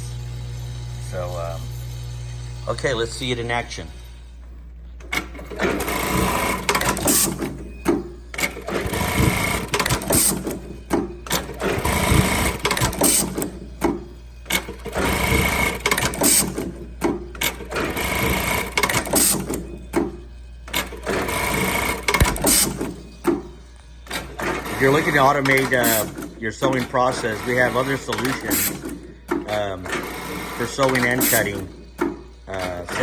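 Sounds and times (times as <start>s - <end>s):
button-sewing machine stitching: 5.1s - 7.6s, 8.3s - 10.6s, 11.3s - 13.6s, 14.5s - 16.7s, 17.4s - 19.6s, 20.7s - 23.0s, 24.1s - 31.7s.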